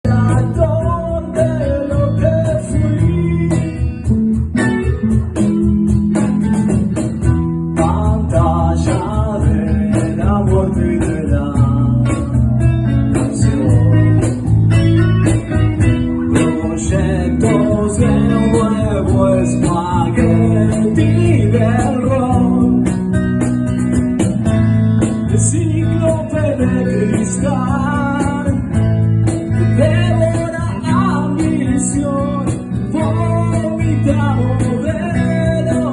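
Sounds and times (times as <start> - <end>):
band music led by guitar: 0.0 - 35.9.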